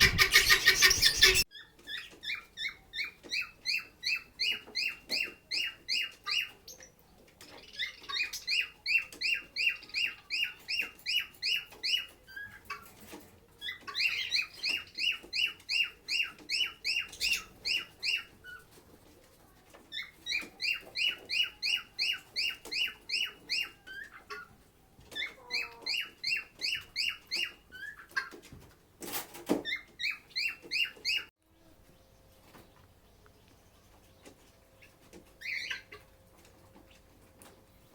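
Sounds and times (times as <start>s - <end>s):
lovebird chirping: 0.0s - 6.9s.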